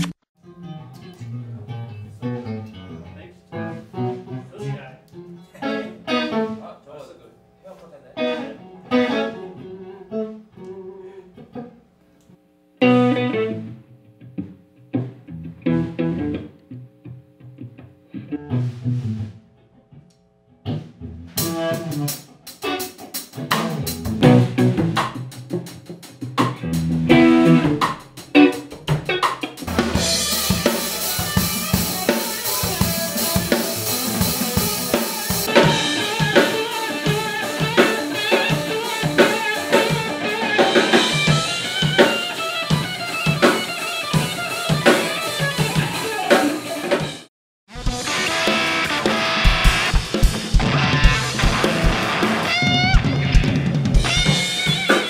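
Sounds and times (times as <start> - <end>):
guitar notes: 0.0 - 7.2, 8.0 - 11.8, 12.8 - 25.9, 26.5 - 47.0, 47.7 - 55.0
drum kit playing: 20.7 - 55.0
cymbals crashing: 29.7 - 40.0.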